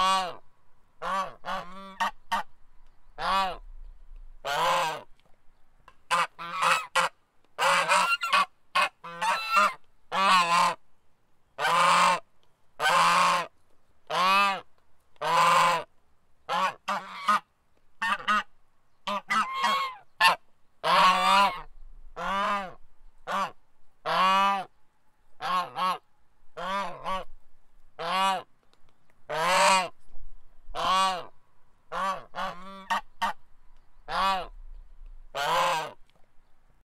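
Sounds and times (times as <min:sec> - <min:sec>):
goose honking: 0:00.0 - 0:00.4, 0:01.0 - 0:02.5, 0:03.2 - 0:03.6, 0:04.4 - 0:05.1, 0:06.1 - 0:10.8, 0:11.6 - 0:12.2, 0:12.8 - 0:13.5, 0:14.1 - 0:14.6, 0:15.2 - 0:15.9, 0:16.5 - 0:24.7, 0:25.4 - 0:26.0, 0:26.6 - 0:27.3, 0:28.0 - 0:28.5, 0:29.3 - 0:29.9, 0:30.7 - 0:31.3, 0:31.9 - 0:33.4, 0:34.1 - 0:34.6, 0:35.3 - 0:36.0.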